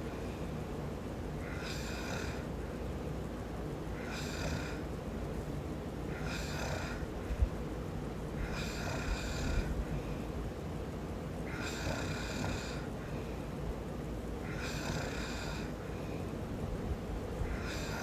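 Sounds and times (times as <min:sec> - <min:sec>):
steady low rumble: 0:00.0 - 0:18.0
man snoring: 0:01.4 - 0:02.5, 0:04.0 - 0:04.8, 0:06.1 - 0:07.1, 0:08.4 - 0:09.8, 0:11.4 - 0:12.9, 0:14.4 - 0:15.8, 0:17.5 - 0:18.0.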